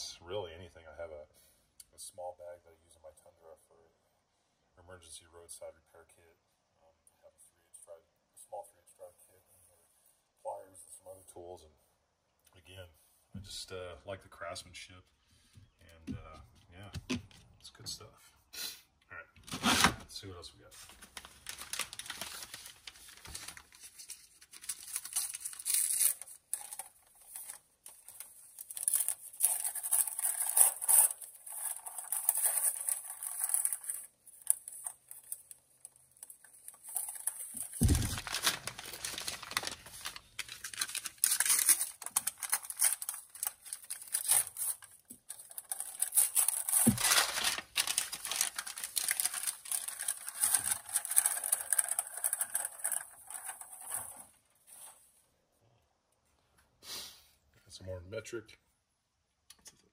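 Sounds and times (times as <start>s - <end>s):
packaging tearing and crumpling: 20.9s - 54.2s
thumps: 37.7s - 38.4s.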